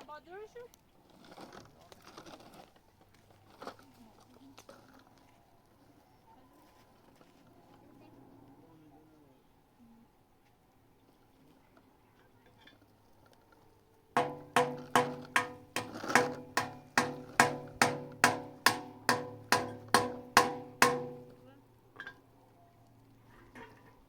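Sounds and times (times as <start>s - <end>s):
hammer blows with metallic ring: 14.2s - 21.5s.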